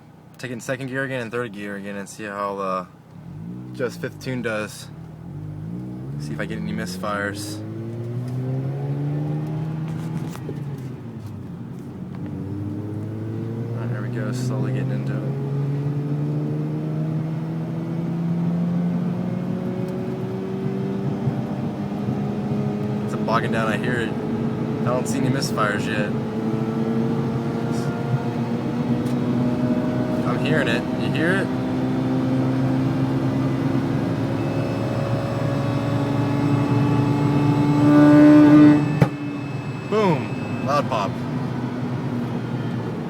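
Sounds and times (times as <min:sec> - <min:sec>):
rotary engine revving under load: 0:03.2 - 0:04.0, 0:04.9 - 0:11.0, 0:12.2 - 0:43.0.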